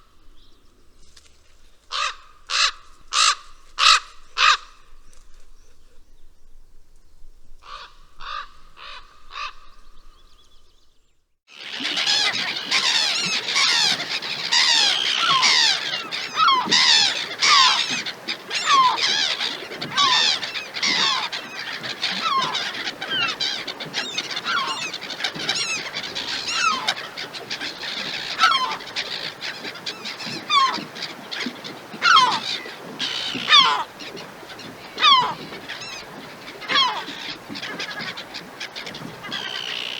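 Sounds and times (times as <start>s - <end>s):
crow cawing: 1.9s - 4.8s, 7.6s - 9.8s, 11.5s - 25.8s
flock of birds calling: 11.5s - 39.9s.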